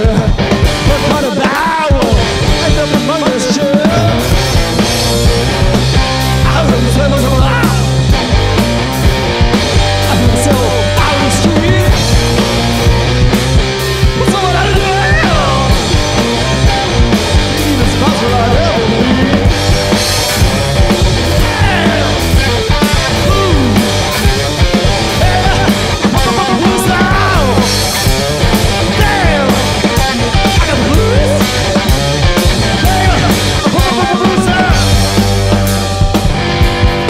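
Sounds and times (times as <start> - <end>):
live rock band playing: 0.0 - 37.0.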